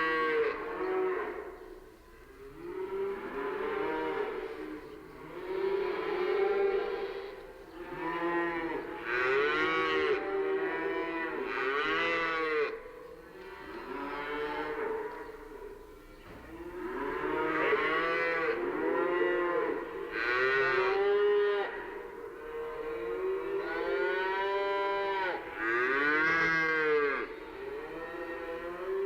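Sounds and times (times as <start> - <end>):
cows mooing: 2.6 - 12.8, 16.4 - 29.0.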